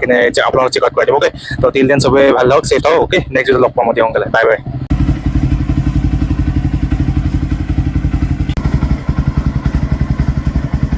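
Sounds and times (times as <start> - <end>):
motorcycle engine idling: 4.6 - 10.9.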